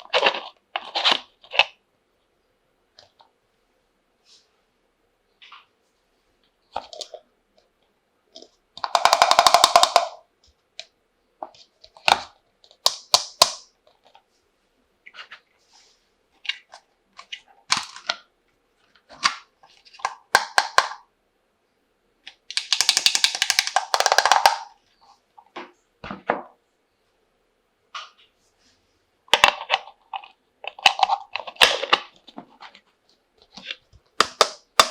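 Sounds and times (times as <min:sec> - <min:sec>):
plastic toy pieces clicking: 0:08.8 - 0:10.2, 0:22.5 - 0:24.7.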